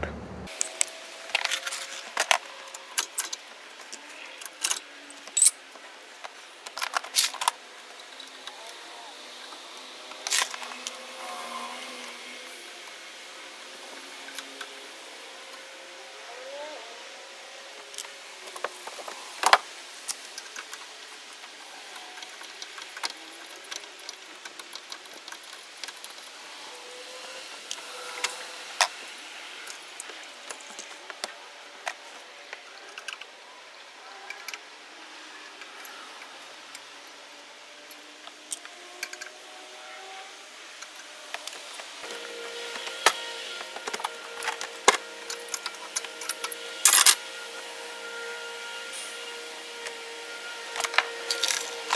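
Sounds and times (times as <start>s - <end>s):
small metal parts clinking: 0.5s - 8.5s, 40.8s - 47.4s, 50.5s - 51.9s
small parts clicking and clinking: 0.5s - 11.0s, 17.9s - 33.3s, 37.8s - 39.4s, 40.8s - 48.4s, 49.2s - 51.9s.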